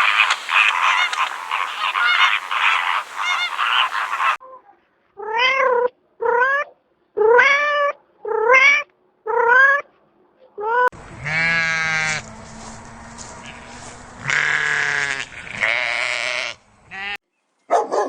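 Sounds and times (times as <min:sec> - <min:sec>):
flock of birds honking: 0:00.0 - 0:04.4, 0:11.0 - 0:17.2
cat meowing: 0:14.2 - 0:17.1.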